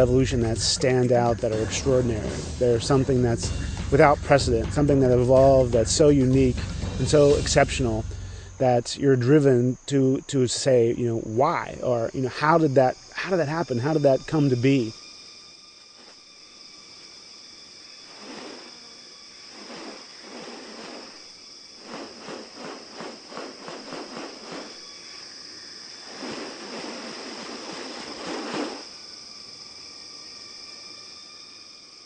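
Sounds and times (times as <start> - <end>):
insects droning: 0.0 - 32.0
noisy rasping bursts: 18.0 - 25.3, 26.0 - 29.0.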